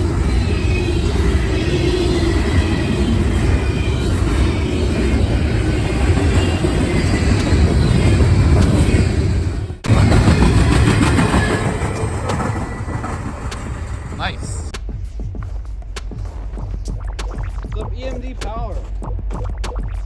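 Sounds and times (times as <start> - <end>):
train wheels rumbling on rails: 0.0 - 15.5.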